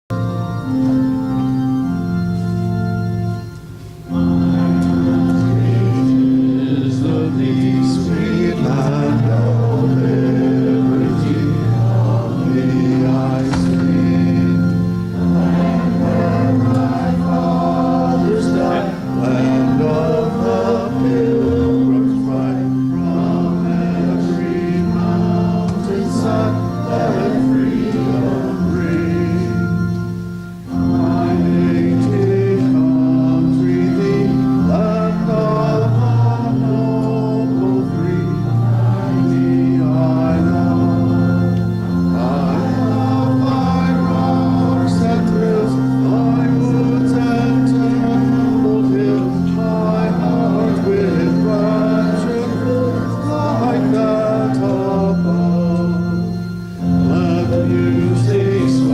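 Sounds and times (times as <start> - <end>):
organ playing held chords: 0.0 - 58.9
voices singing a hymn: 0.1 - 58.9.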